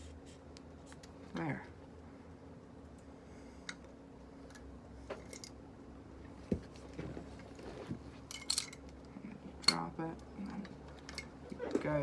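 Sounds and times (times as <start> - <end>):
steady low hum: 0.0 - 12.0
small metal parts clicking: 8.3 - 8.8.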